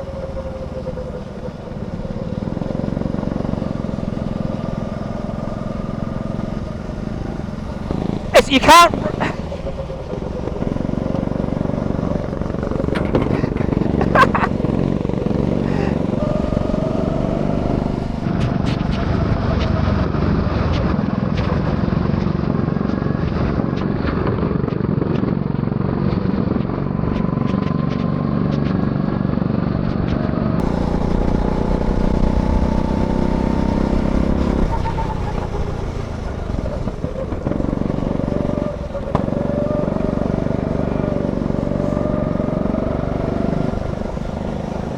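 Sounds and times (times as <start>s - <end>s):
go-kart engine revving: 0.0s - 20.5s, 30.6s - 44.9s.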